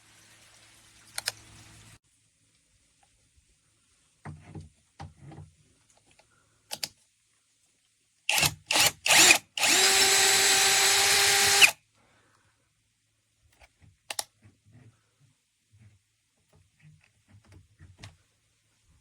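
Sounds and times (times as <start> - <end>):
cordless drill motor running: 8.3 - 11.8
drill click: 8.3 - 11.8.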